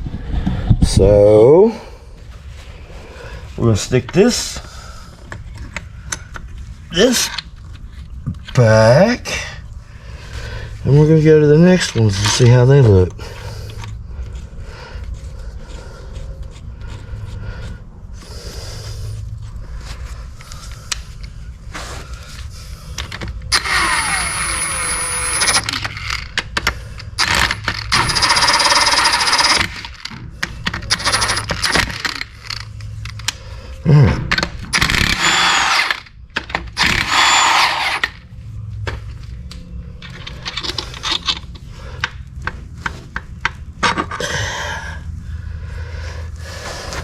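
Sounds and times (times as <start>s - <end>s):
power tool bursts: 23.5s - 26.2s, 27.2s - 29.9s, 30.9s - 32.2s, 34.7s - 36.1s, 36.8s - 38.2s
metal tools clinking: 40.0s - 41.6s.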